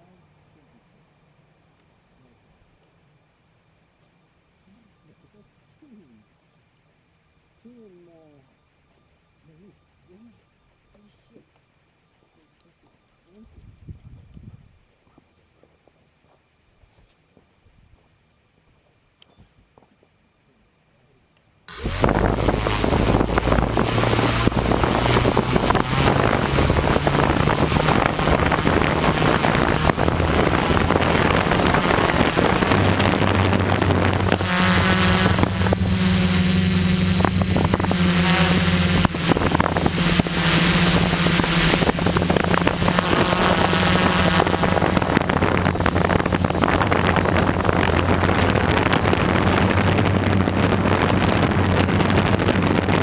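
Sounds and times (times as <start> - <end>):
wind on microphone: 13.4 - 14.8, 21.7 - 53.0
quadcopter propellers whirring: 21.7 - 53.0.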